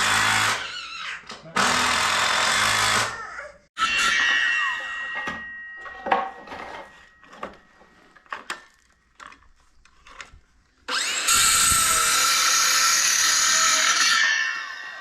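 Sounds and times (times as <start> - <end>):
cordless drill driving screws: 1.6 - 3.2.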